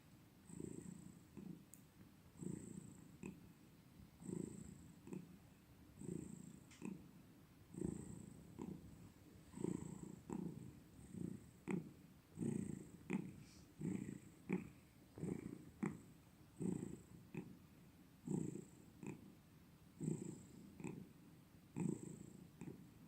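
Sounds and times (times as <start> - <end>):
cat purring: 0.4 - 23.0.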